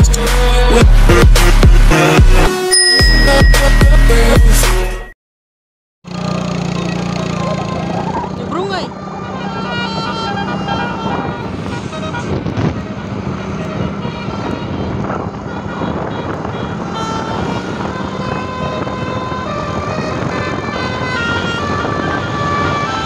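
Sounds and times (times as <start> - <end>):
multi-tone bus horn melody: 9.0 - 23.0.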